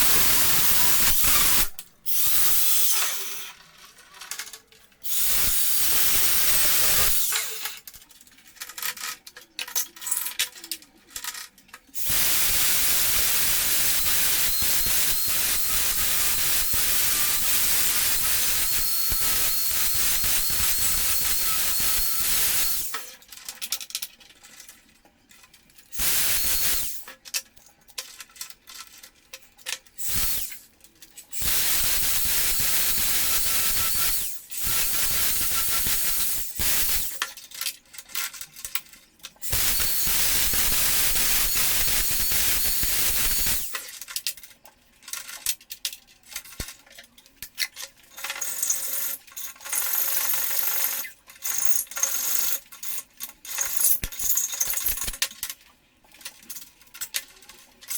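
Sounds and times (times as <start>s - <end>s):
short clicks and rattles: 16.8s - 57.9s.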